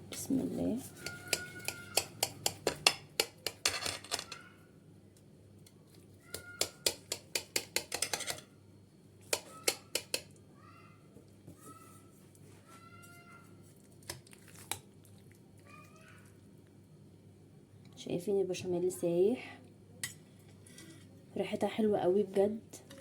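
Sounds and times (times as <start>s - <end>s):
metal utensil scraping baking dish: 7.6s - 8.5s.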